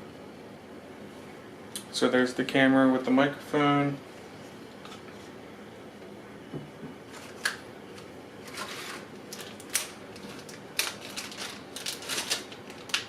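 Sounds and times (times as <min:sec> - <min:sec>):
packaging rustling: 0:08.4 - 0:13.0.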